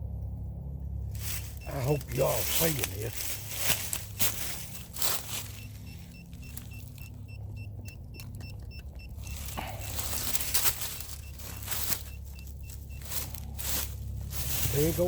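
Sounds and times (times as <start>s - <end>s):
steady low hum: 0.0s - 15.0s
scraping and rustling: 1.1s - 7.1s, 9.2s - 15.0s
metal detector beeping: 1.3s - 15.0s.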